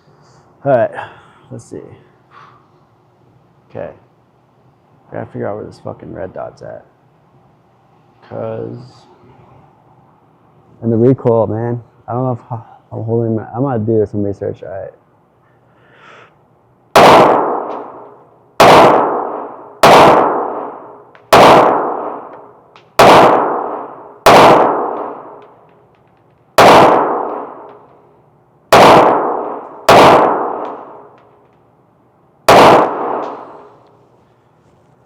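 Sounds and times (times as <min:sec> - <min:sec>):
pistol shots with echo: 0:16.9 - 0:28.0, 0:28.7 - 0:31.6, 0:32.4 - 0:33.8.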